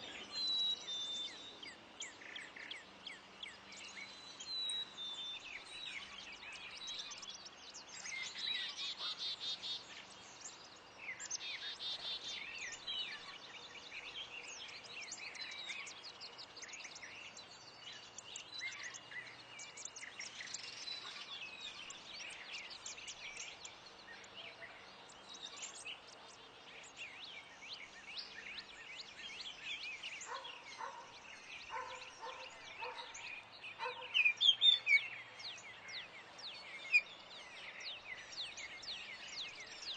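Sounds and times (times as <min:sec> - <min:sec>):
songbirds chirping and singing: 0:00.0 - 0:39.9.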